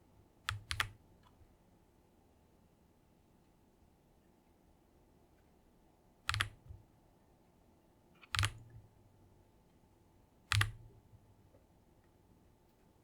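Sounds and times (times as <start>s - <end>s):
mechanical keyboard keystrokes: 0.5s - 1.0s, 6.3s - 6.7s, 8.2s - 8.7s, 10.5s - 10.9s.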